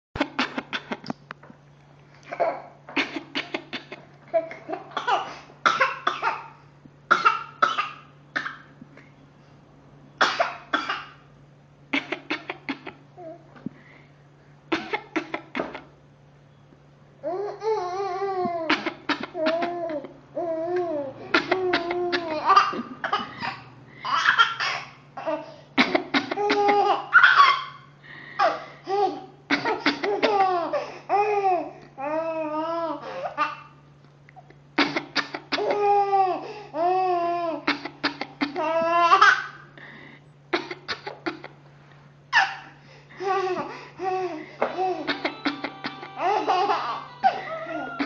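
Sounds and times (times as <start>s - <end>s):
woman fake coughing: 12.0s - 13.0s, 14.7s - 15.9s, 29.5s - 30.6s, 34.8s - 35.8s, 37.7s - 38.7s, 44.6s - 48.0s
baby laughing: 17.7s - 27.8s, 34.8s - 39.6s, 42.3s - 48.0s.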